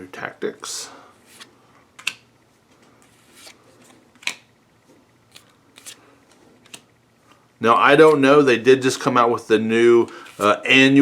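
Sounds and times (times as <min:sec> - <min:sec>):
cards rustling: 0:01.2 - 0:02.2, 0:03.0 - 0:04.4, 0:05.3 - 0:06.9, 0:07.7 - 0:09.1, 0:10.0 - 0:10.8.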